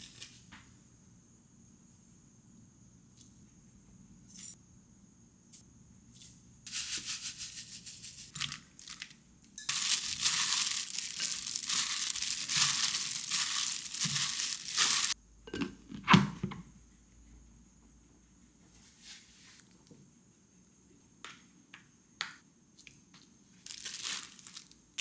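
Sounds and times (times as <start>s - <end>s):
crinkling and tearing: 8.3s - 15.2s, 23.6s - 24.8s.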